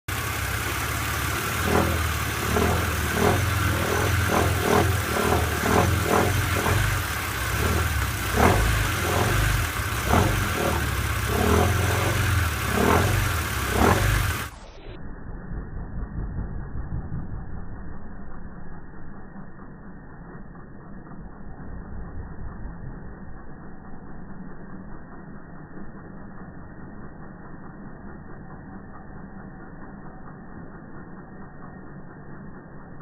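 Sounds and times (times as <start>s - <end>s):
car engine idling: 0.0s - 15.0s.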